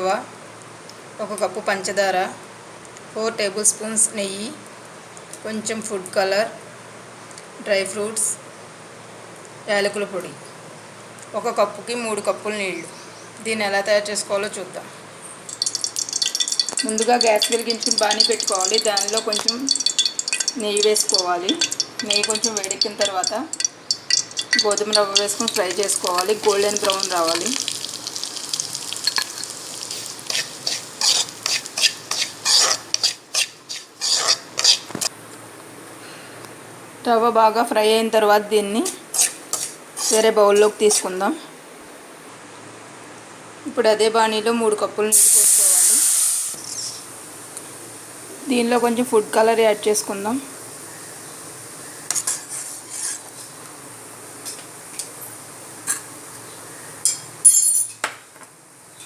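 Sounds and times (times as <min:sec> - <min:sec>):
light sizzle: 0:15.2 - 0:42.3, 0:45.1 - 0:58.2
metal spoon clinking on cookware: 0:15.5 - 0:27.7, 0:29.0 - 0:34.8, 0:57.0 - 0:57.8
spatula scraping pan: 0:29.0 - 0:35.1, 0:39.1 - 0:40.7, 0:52.1 - 0:53.4.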